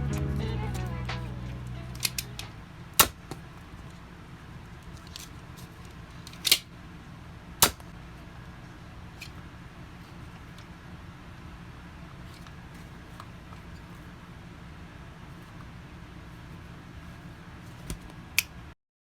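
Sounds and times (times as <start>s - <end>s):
sharp plastic snaps: 2.0s - 3.4s, 6.3s - 6.7s, 7.6s - 7.9s.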